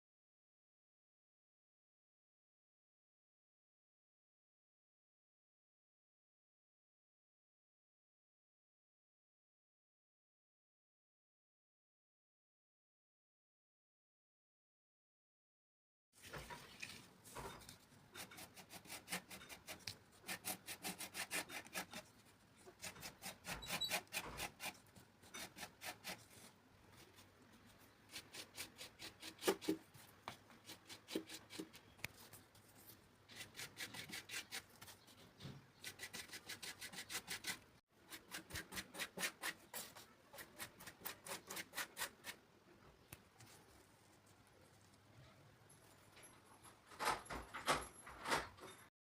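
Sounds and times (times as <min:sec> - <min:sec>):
hand tool rubbing on workpiece: 0:18.2 - 0:22.1, 0:22.7 - 0:26.5.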